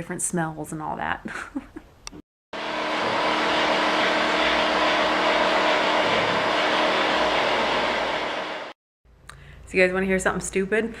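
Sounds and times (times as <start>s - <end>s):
construction machine droning with hiss: 2.6s - 8.8s.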